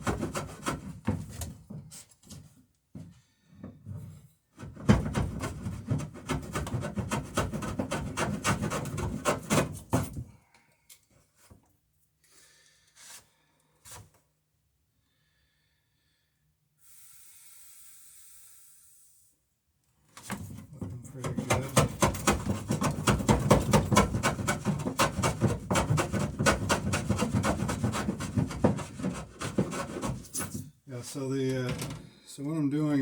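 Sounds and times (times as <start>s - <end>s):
hand tool rasping on wood: 0.0s - 1.1s, 4.7s - 10.1s, 20.9s - 30.6s.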